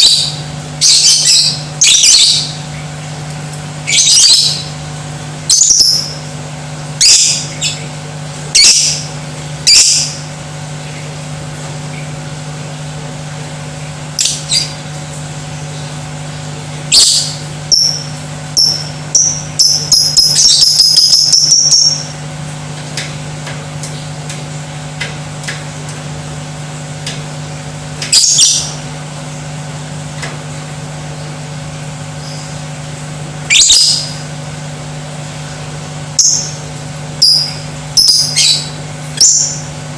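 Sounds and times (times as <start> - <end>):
steady low hum: 0.0 - 39.9
lovebird squawking: 3.9 - 4.7, 14.2 - 14.8, 16.9 - 22.1, 28.1 - 28.8, 33.5 - 34.2, 37.2 - 39.7.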